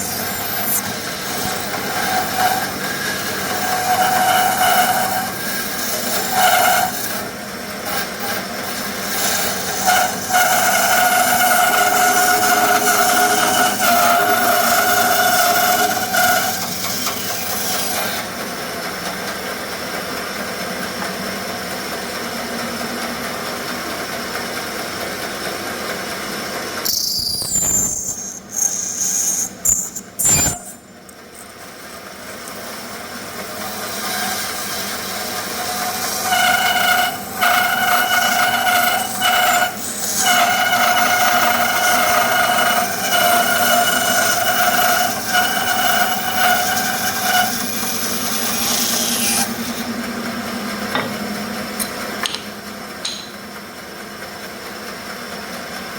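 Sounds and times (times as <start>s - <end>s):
band saw cutting wood: 0.0s - 19.5s, 26.8s - 31.6s, 32.3s - 52.4s.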